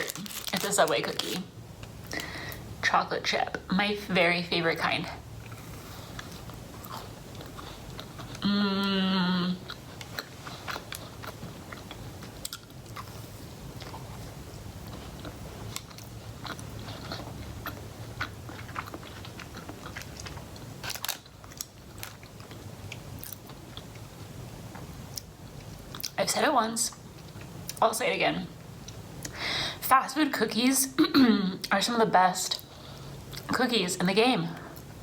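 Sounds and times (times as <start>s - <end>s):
chewing crunchy cookie: 5.1s - 8.5s, 9.6s - 26.2s
person humming: 8.4s - 9.7s.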